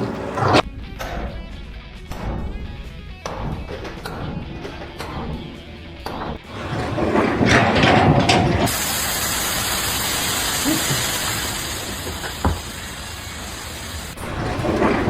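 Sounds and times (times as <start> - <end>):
pressurized spraying hiss: 8.7 - 14.4
knock: 12.4 - 12.6.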